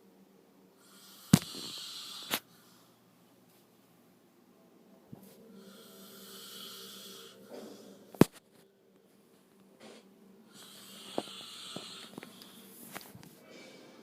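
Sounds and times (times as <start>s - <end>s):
man snoring: 0.8s - 2.5s, 5.6s - 8.1s, 10.5s - 12.4s.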